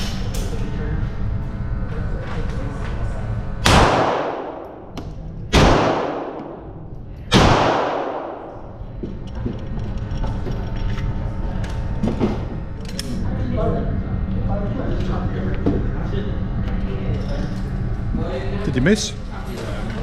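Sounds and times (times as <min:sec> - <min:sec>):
echoing gunshots: 0:03.6 - 0:04.9, 0:05.5 - 0:06.7, 0:07.3 - 0:08.6.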